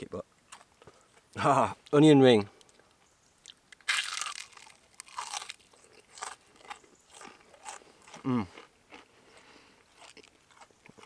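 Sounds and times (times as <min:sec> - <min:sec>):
crunchy biting and chewing: 0:03.4 - 0:11.0.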